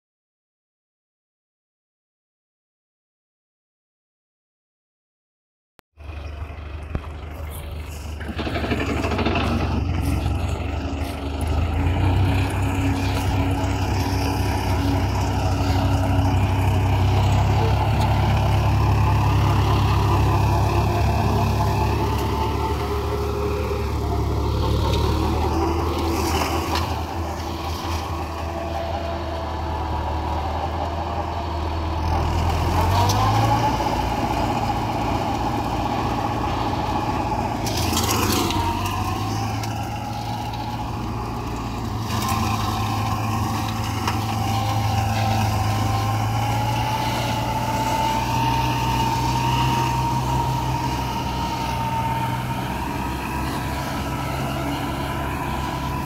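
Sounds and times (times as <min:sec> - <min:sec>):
tractor diesel engine running: 0:06.0 - 0:56.0
rattling flurry: 0:07.7 - 0:10.9.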